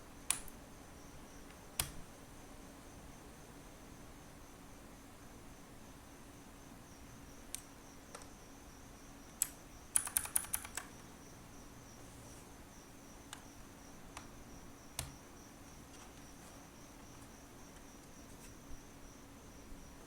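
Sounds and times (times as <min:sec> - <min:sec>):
mechanical keyboard clicks: 0:01.8 - 0:02.0, 0:09.3 - 0:10.9.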